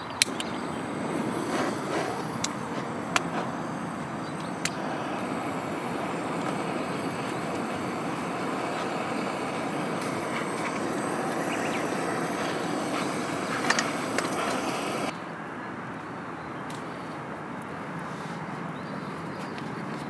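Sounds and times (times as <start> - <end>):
river flowing: 0.0 - 15.1
sharp crackles: 0.0 - 15.1.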